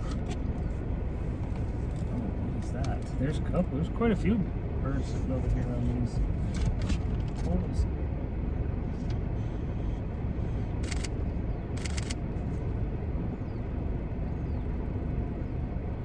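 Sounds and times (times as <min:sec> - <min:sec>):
car engine idling: 0:00.0 - 0:16.0
camera shutter clicks: 0:11.8 - 0:12.2.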